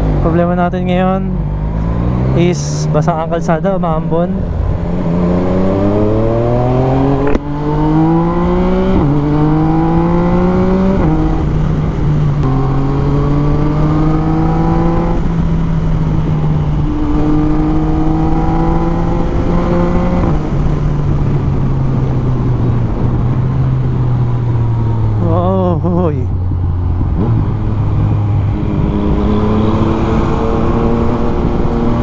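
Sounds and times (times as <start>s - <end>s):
motorcycle engine accelerating: 0.0s - 32.0s.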